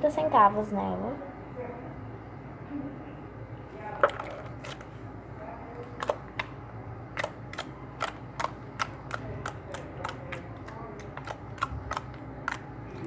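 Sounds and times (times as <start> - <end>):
slime squeezed making clicking pops: 7.2 - 10.4.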